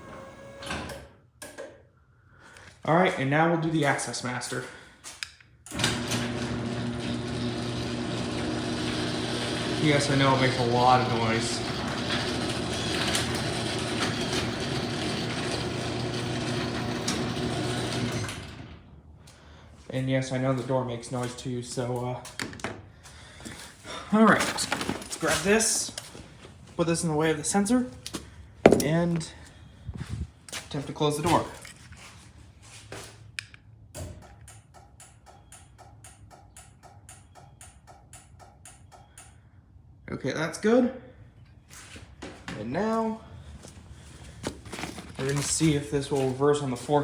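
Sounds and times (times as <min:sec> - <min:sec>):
garage door opener motor hum: 0:00.0 - 0:01.6, 0:05.7 - 0:19.1.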